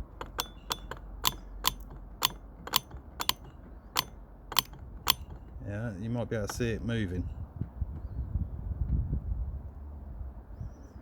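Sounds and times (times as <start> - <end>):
compressor clutch clicking: 0.0 - 5.6, 6.4 - 6.8.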